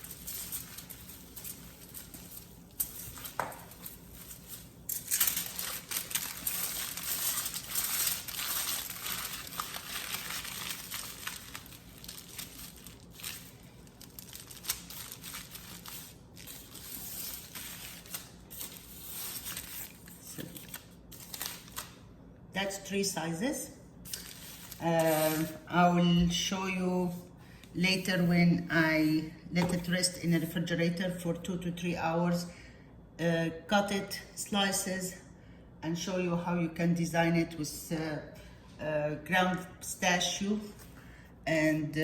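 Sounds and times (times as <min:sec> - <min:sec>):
wrapping crinkling and rustling: 0:00.0 - 0:22.0, 0:24.0 - 0:25.8.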